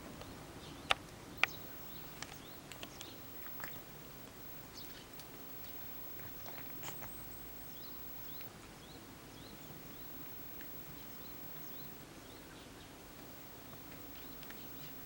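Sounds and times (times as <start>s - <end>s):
high rising chirp: 1.4s - 8.5s.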